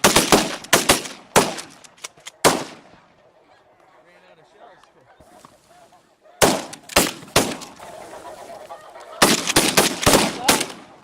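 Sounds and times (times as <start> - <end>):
shotgun shots: 0.0 - 2.9, 6.4 - 7.8, 9.2 - 11.0
geese honking: 2.9 - 10.5.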